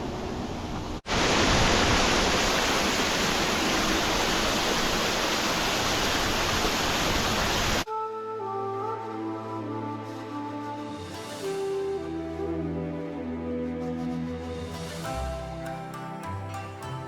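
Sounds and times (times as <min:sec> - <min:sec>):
waterfall rushing: 0:01.1 - 0:07.8.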